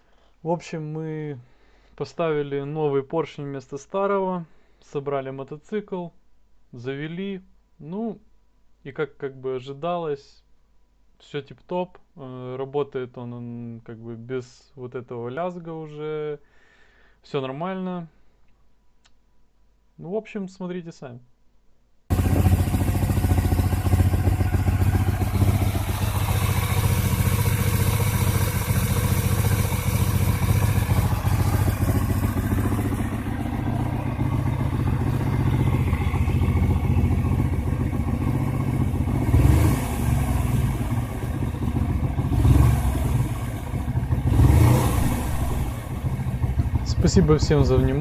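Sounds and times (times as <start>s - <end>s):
motorcycle engine idling: 22.1s - 48.0s.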